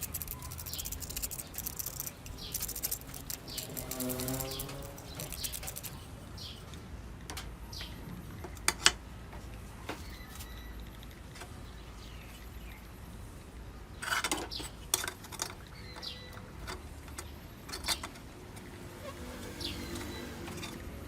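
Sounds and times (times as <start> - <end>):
small metal parts clattering: 0.0 - 6.0, 14.0 - 18.7.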